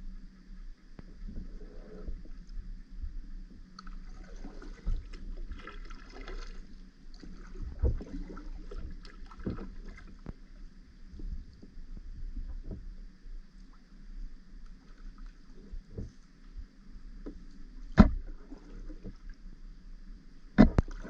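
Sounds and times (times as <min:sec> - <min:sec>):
paddle strokes splashing: 0:03.8 - 0:10.5, 0:17.8 - 0:19.4, 0:20.5 - 0:21.0
dull thumps against hull: 0:09.3 - 0:10.4, 0:17.2 - 0:19.2, 0:20.5 - 0:21.0.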